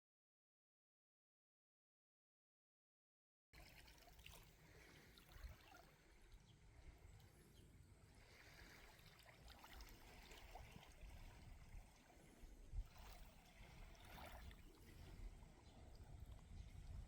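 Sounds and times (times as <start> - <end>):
small waves lapping: 3.6 - 17.0.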